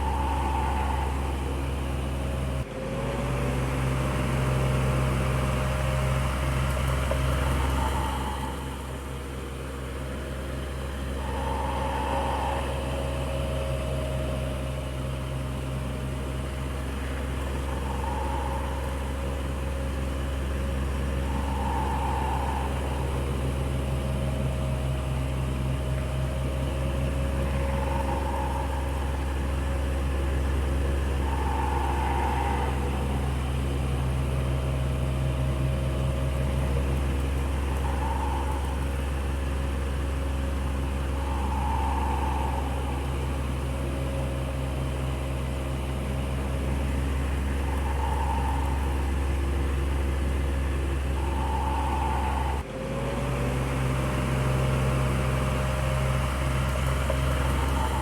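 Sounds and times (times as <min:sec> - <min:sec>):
electric fan running: 0:00.0 - 0:52.6.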